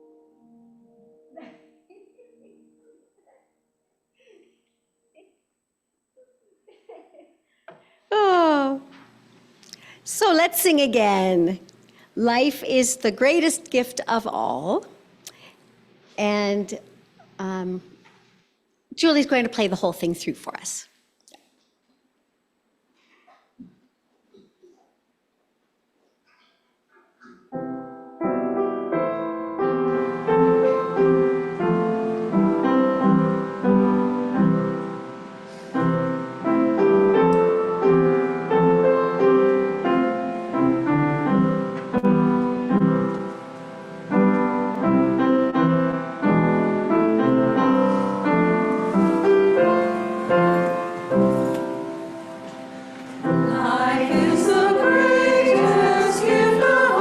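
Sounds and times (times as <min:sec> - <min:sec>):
piano playing hymn tune: 0:00.0 - 0:03.0, 0:27.6 - 0:57.0
congregation singing: 0:44.2 - 0:57.0.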